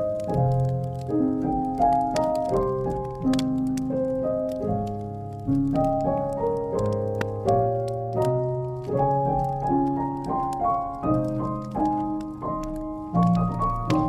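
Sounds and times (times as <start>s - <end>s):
slow gentle solo piano: 0.0s - 14.0s
wood fire crackling: 0.0s - 14.0s.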